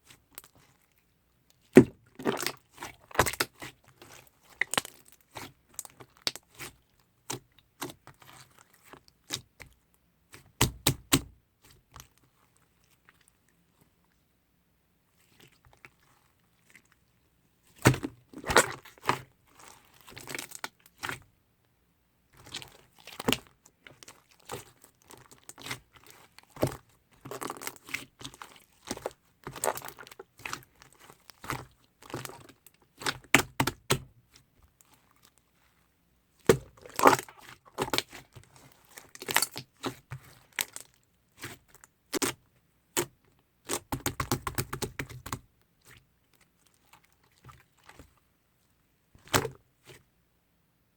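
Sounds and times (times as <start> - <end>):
slime squished by hand: 17.8 - 21.2, 36.4 - 46.0.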